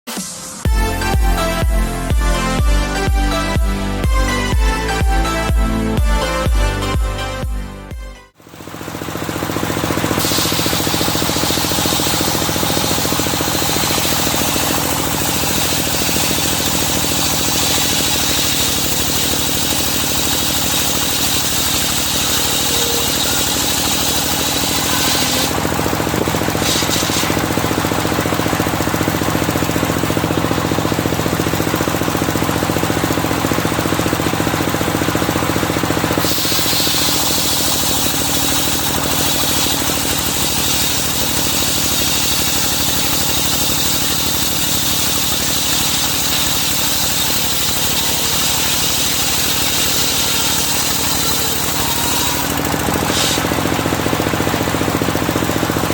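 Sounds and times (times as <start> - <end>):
sawmill engine running: 0.1 - 55.9
high saw whine: 8.4 - 55.9.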